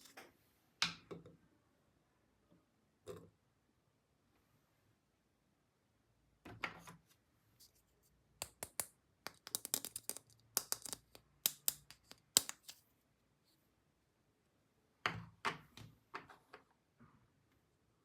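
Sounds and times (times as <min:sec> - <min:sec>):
plastic toy parts clicking: 0:08.4 - 0:12.7.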